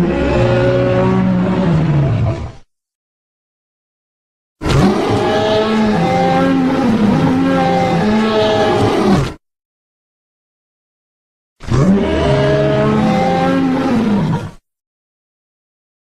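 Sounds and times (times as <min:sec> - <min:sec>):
dinosaur roar: 0:00.0 - 0:02.7, 0:04.6 - 0:09.4, 0:11.6 - 0:14.6.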